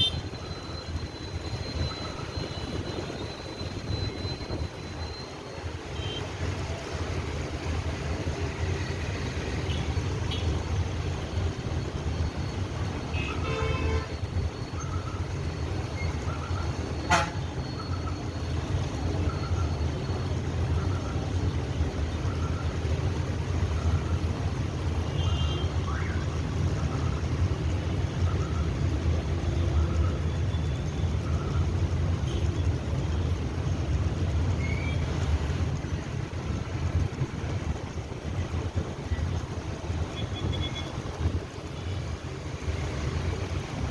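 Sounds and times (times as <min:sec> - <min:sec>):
vehicle horns tooting: 0:00.0 - 0:00.2, 0:13.1 - 0:14.3, 0:17.0 - 0:17.6
traffic rumble: 0:00.0 - 0:43.9.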